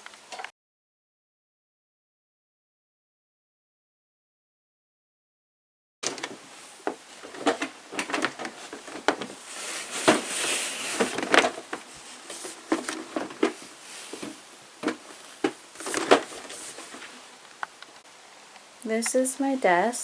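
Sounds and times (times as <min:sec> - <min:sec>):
laminate pieces clattering: 0:06.0 - 0:18.0
scraping rustle: 0:06.0 - 0:18.0.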